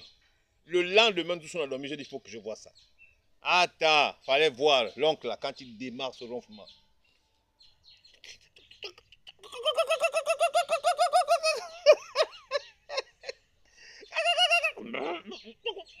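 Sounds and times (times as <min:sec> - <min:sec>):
high-pitched voice giggling: 0:08.2 - 0:13.4, 0:14.0 - 0:16.0.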